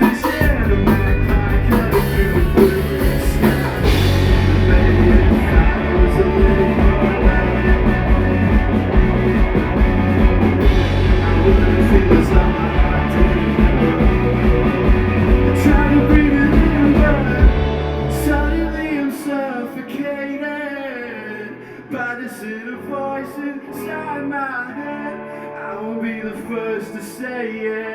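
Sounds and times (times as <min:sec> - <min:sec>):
rock band playing loud: 0:00.0 - 0:21.1.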